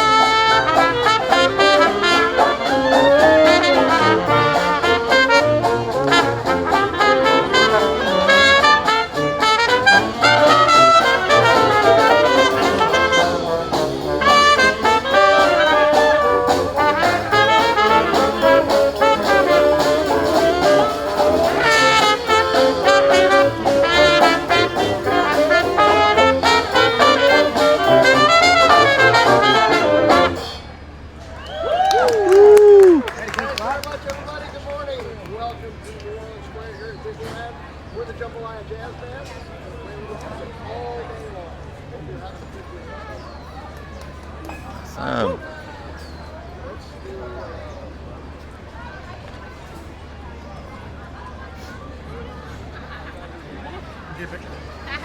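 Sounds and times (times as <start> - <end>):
brass band playing jazzy tune: 0.0 - 30.8
trumpets and trombones: 0.0 - 30.8.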